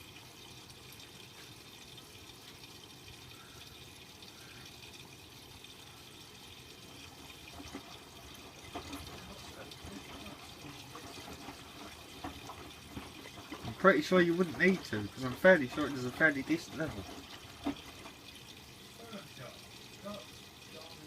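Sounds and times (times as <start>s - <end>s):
water running into drum: 0.0s - 21.0s.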